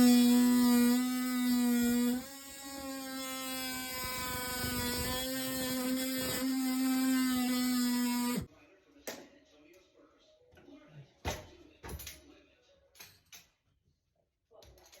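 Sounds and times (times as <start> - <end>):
power tool motor whining: 0.0 - 8.5.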